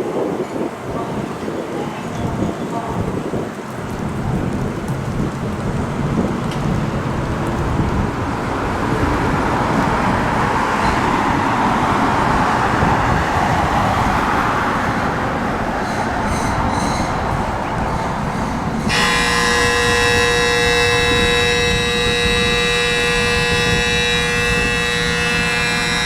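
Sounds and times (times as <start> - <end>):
fire truck engine and road noise: 3.0 - 26.0
many-toned warning horn: 5.8 - 15.0, 15.8 - 26.0.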